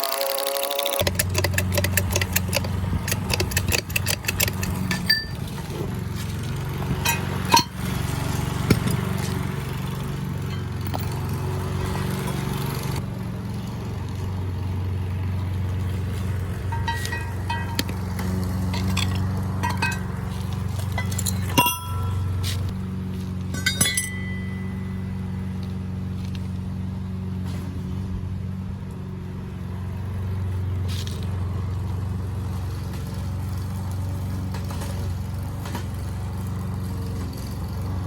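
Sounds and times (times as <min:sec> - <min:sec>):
sharp metallic clicks: 0:00.0 - 0:05.4.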